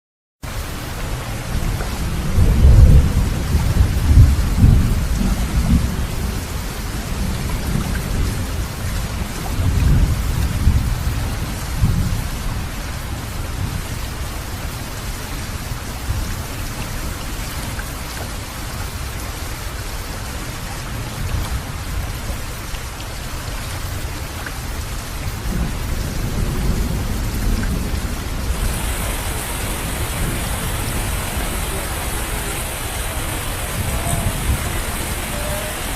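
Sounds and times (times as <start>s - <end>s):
steady rain falling: 0.4s - 35.9s
thunder rumbling: 1.5s - 8.6s, 25.5s - 35.9s.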